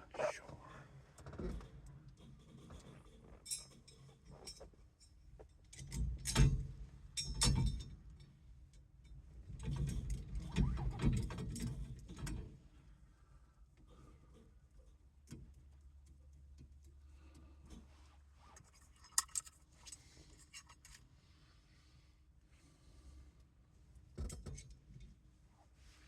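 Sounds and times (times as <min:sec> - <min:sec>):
metal parts and tools clinking: 0:18.6 - 0:21.0.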